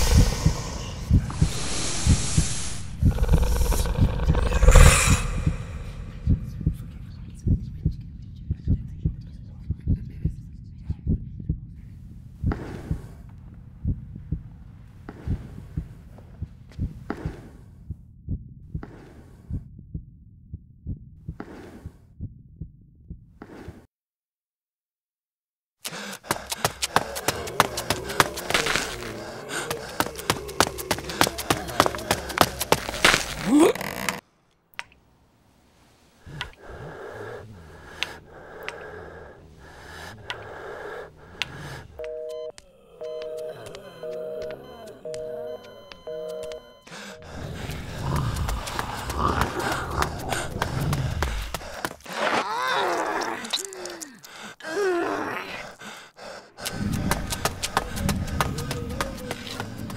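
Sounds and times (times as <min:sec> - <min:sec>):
short hissing rush: 0:01.3 - 0:03.0
telephone busy signal: 0:42.0 - 0:47.2.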